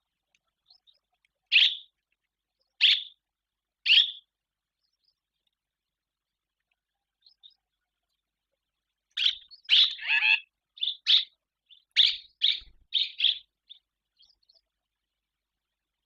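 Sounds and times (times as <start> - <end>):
swallow chirping and twittering: 0.6 - 1.9, 2.6 - 3.2, 3.8 - 5.2, 9.1 - 14.7.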